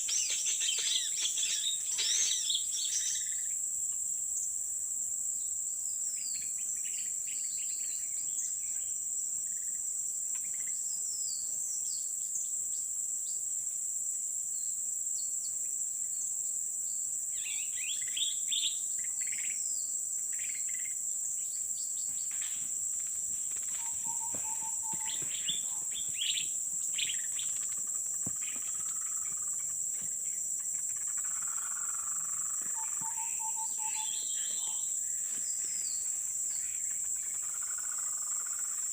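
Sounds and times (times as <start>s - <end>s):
bird chirps and calls: 0.0s - 3.5s, 22.0s - 29.7s, 30.6s - 38.8s
insect drone: 0.0s - 38.9s
steady whistles: 23.8s - 26.4s.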